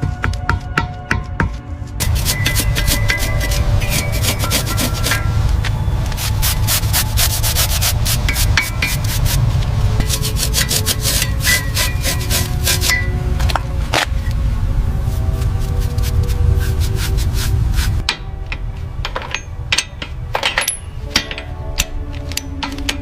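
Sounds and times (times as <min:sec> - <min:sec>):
steady low rumble: 0:01.5 - 0:23.0
hand rubbing on a surface: 0:06.1 - 0:09.4, 0:10.0 - 0:12.9, 0:15.0 - 0:18.0.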